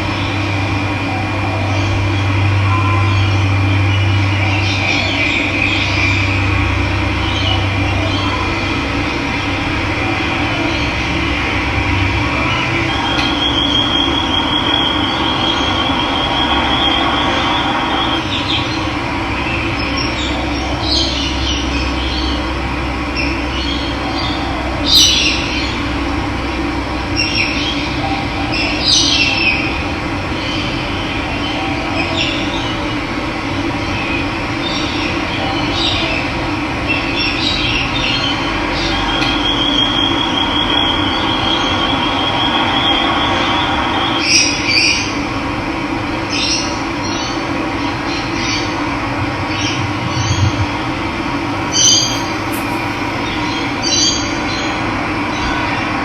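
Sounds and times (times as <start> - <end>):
birds chirping: 51.6 - 54.6.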